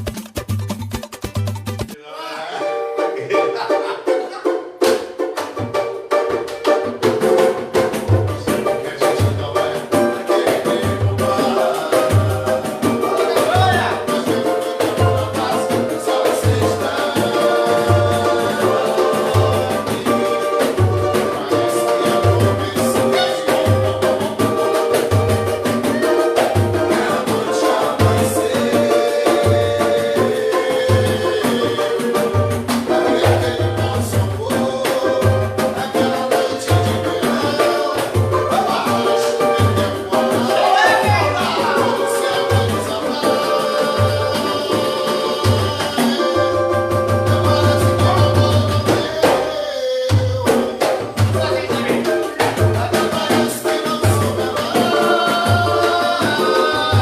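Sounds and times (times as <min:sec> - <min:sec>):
samba band playing: 0:00.0 - 0:02.0, 0:02.9 - 0:57.0
strummed cavaquinho: 0:00.0 - 0:57.0.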